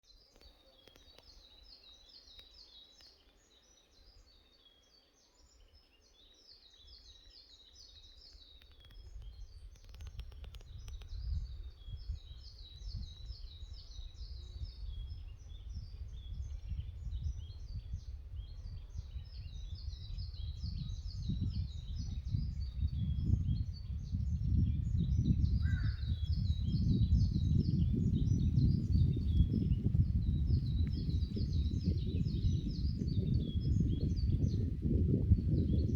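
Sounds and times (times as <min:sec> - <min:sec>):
songbirds singing: 0:00.0 - 0:35.9
gusting wind: 0:08.6 - 0:35.9.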